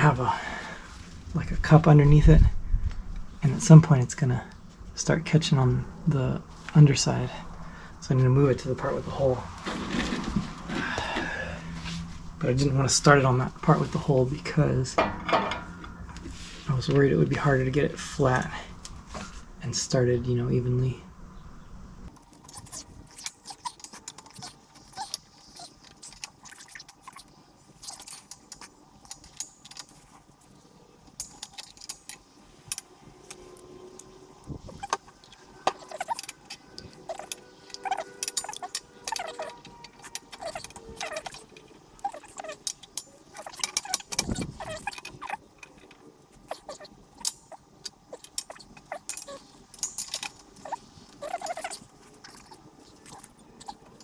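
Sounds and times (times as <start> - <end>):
metal tools clinking: 22.1 - 54.0.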